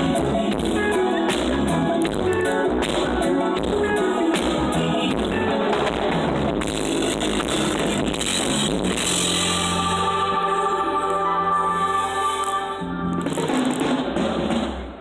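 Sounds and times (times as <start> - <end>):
drums: 0.0 - 15.0
live band music over pa system: 0.0 - 15.0
person singing: 9.3 - 13.6.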